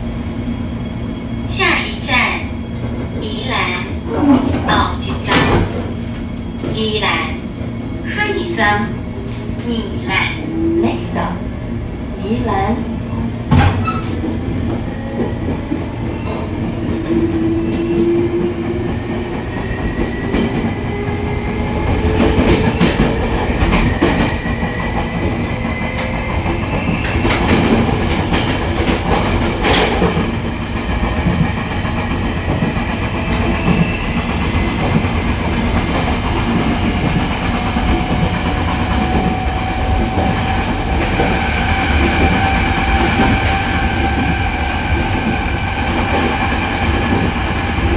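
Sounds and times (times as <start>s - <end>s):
electric locomotive inverter whine: 13.9s - 47.9s.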